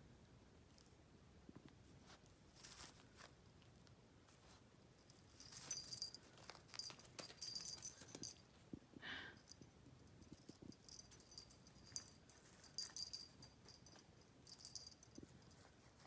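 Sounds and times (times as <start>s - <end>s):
cat collar bell jingling: 2.6s - 2.9s, 5.0s - 8.6s, 9.4s - 15.8s.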